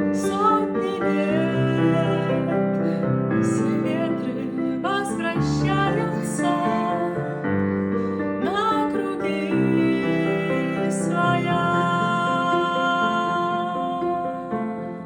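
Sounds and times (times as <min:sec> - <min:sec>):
piano accompaniment: 0:00.0 - 0:15.0
woman singing: 0:00.0 - 0:15.0.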